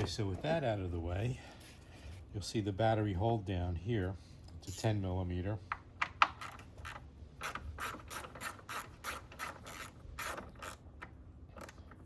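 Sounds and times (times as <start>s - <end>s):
socket ratchet clicking: 6.2s - 12.0s.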